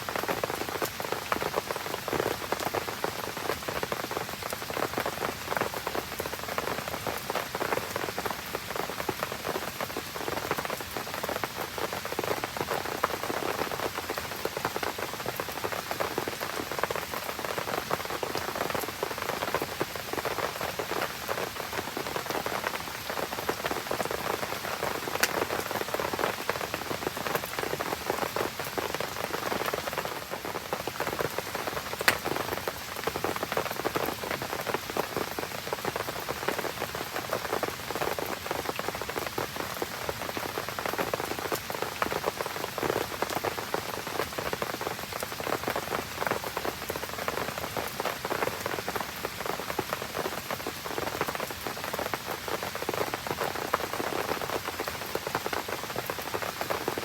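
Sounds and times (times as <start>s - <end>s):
rain pattering: 0.0s - 57.0s
sharp snap: 32.0s - 32.2s.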